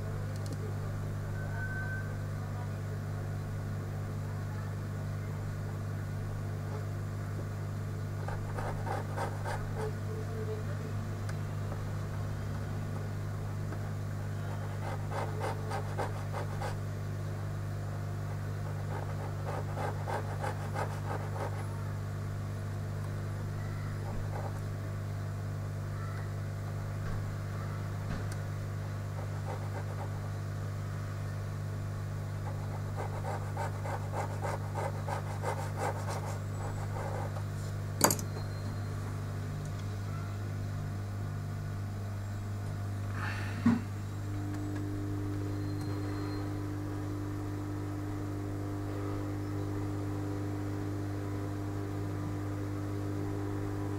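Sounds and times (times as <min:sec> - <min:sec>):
steady low hum: 0:00.0 - 0:53.9
fine scratching and clicking: 0:08.2 - 0:10.0, 0:13.0 - 0:16.8, 0:18.3 - 0:21.7, 0:29.0 - 0:30.4, 0:32.4 - 0:37.8.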